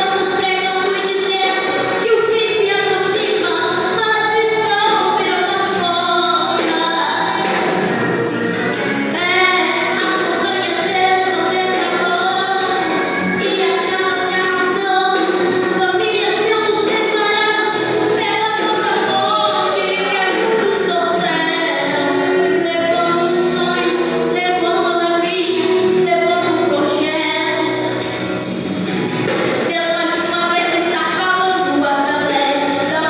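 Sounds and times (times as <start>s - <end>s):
instrumental backing music: 0.0s - 33.0s
woman singing worship song: 0.0s - 33.0s.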